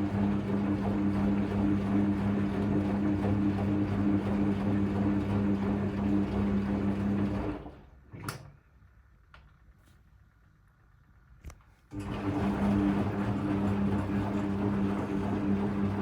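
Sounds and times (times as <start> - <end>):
washing machine motor hum: 0.0 - 8.1, 11.9 - 16.0.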